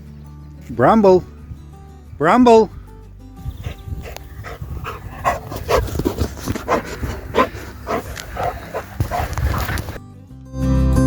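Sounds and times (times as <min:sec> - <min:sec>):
dog panting: 0:03.5 - 0:10.0.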